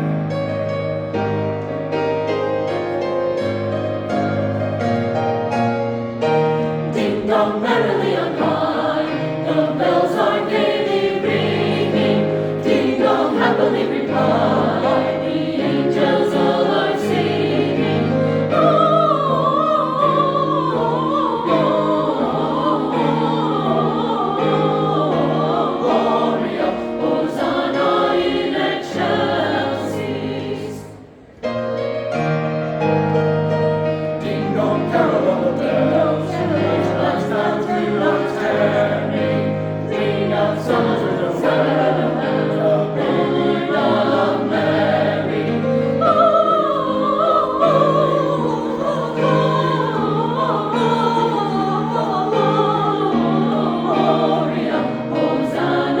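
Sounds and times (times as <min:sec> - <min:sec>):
choir singing: 0:00.0 - 0:31.4, 0:33.5 - 0:56.0
piano accompaniment: 0:00.0 - 0:56.0.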